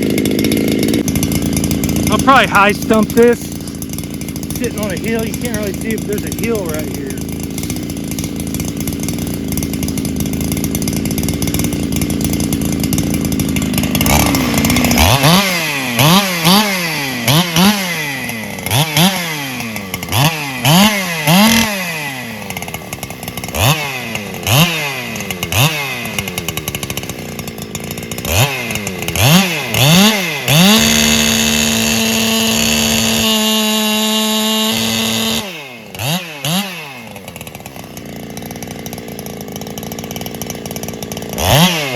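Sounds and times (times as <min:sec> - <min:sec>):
chainsaw running and revving: 0:00.0 - 0:41.9.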